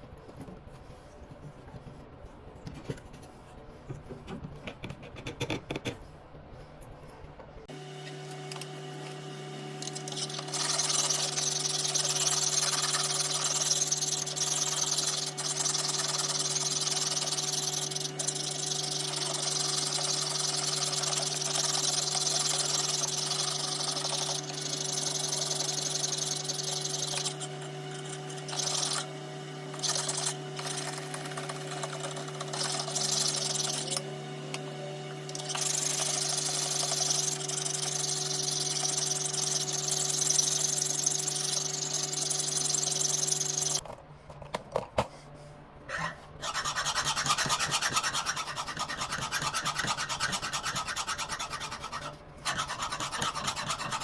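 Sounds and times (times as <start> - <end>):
power tool motor hum: 9.8 - 34.6, 35.2 - 43.8.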